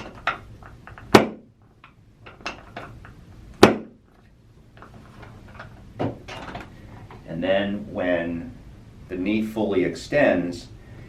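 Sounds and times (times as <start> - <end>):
sharp knocks of a board: 1.1 - 1.5, 3.6 - 4.0.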